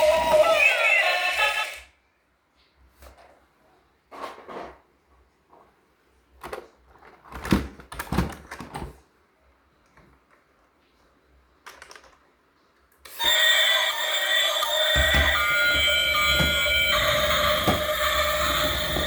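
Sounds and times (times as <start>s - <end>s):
electronic tune with siren tone: 13.2s - 19.0s.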